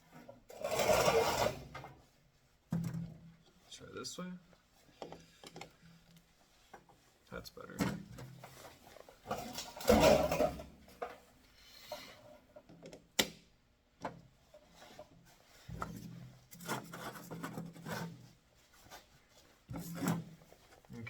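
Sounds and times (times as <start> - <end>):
scrape: 0.0 - 2.2, 14.6 - 21.0
tools rubbing and clattering: 0.0 - 2.2, 8.4 - 12.4, 14.5 - 21.0.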